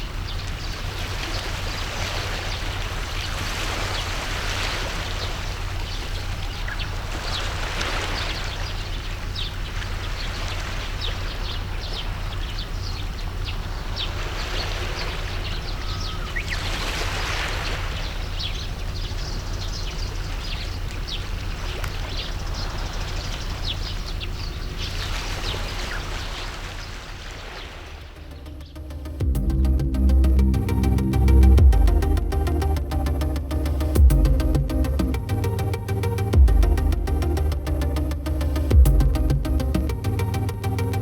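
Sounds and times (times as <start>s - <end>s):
sea water lapping and splashing: 0.0s - 29.0s
steady low hum: 28.0s - 41.0s.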